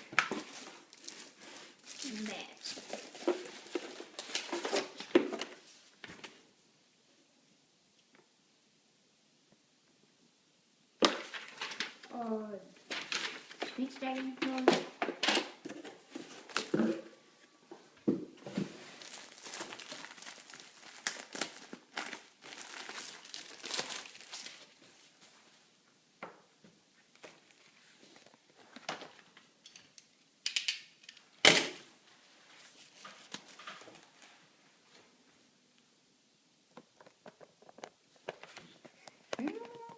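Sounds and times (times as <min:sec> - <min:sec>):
packaging crinkling and tearing: 0:00.0 - 0:05.1, 0:18.6 - 0:24.8.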